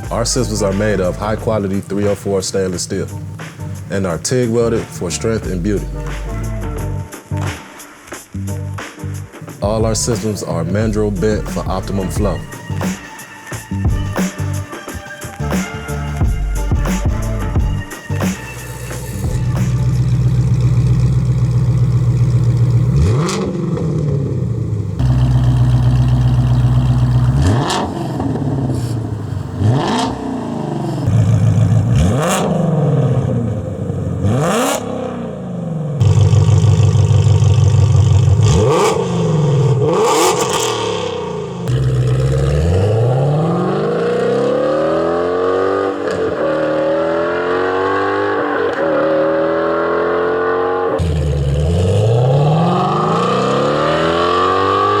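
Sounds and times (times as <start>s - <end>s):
car engine idling and revving: 0.0s - 7.6s, 8.4s - 55.0s
car accelerating hard: 18.6s - 55.0s.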